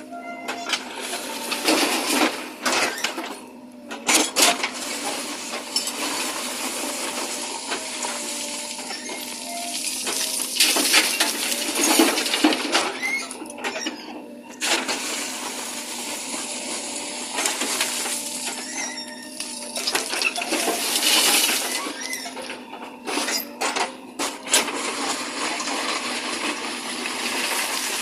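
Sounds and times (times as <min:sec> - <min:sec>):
engine humming: 0:00.0 - 0:28.0
bucket clanking and scraping soil: 0:19.4 - 0:22.4.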